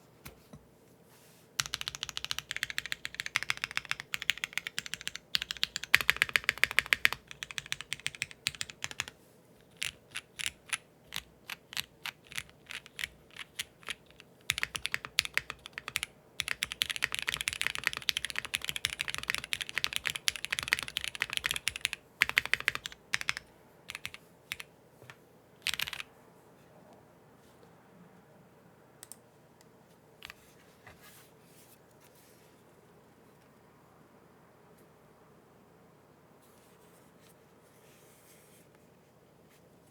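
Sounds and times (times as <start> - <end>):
mechanical keyboard typing: 1.6 - 26.1.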